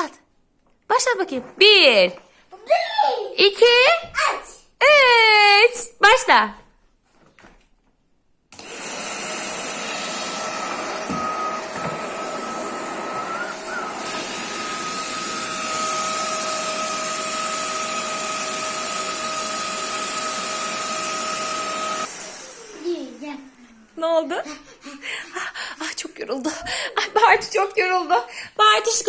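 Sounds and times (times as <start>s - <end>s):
vacuum cleaner running: 8.5s - 24.5s.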